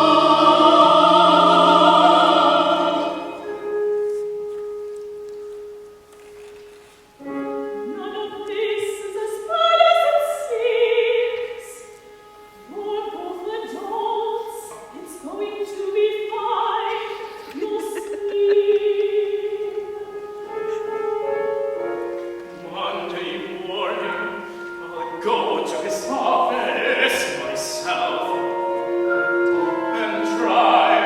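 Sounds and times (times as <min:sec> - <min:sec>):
opera singing: 0:00.0 - 0:04.3, 0:07.2 - 0:31.0
instrumental accompaniment: 0:00.0 - 0:31.0.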